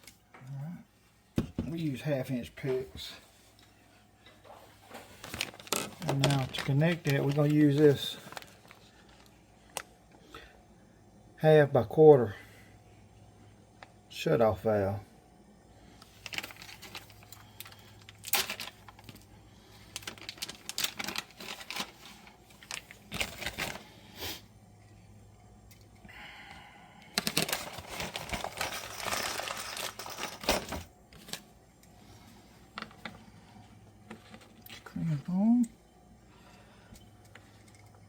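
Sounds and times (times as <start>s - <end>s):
rustling and crinkling: 4.3s - 9.9s, 16.0s - 24.0s, 27.2s - 31.5s.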